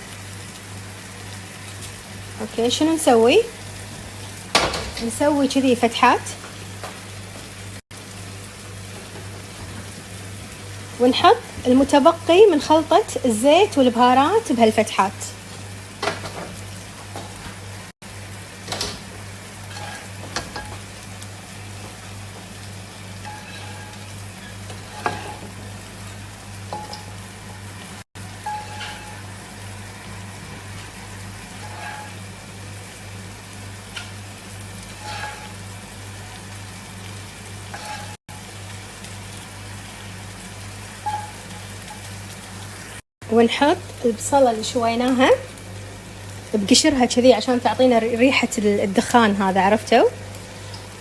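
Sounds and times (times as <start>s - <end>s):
oil and food sizzling: 0.0s - 51.0s
utensil clinking against cookware: 19.7s - 20.8s.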